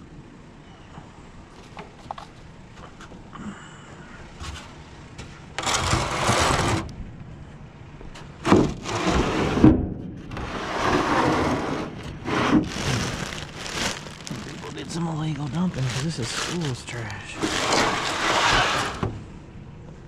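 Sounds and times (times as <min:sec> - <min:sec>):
junk rustling and scraping: 0:04.4 - 0:19.3.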